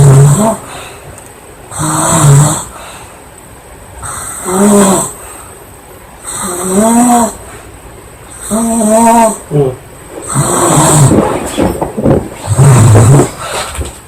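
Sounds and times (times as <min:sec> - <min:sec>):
girl snoring: 0:00.0 - 0:00.8, 0:01.7 - 0:02.9, 0:04.0 - 0:05.2, 0:06.2 - 0:07.4, 0:08.4 - 0:13.5.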